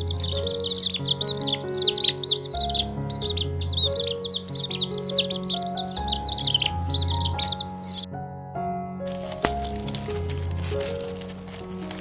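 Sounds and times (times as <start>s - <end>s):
many birds chirping: 0.0s - 8.1s
background music with sustained notes: 0.0s - 12.0s.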